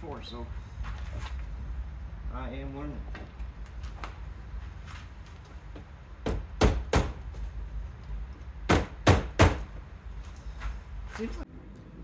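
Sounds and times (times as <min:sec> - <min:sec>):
knocks on plastic door trim: 0:08.7 - 0:09.7.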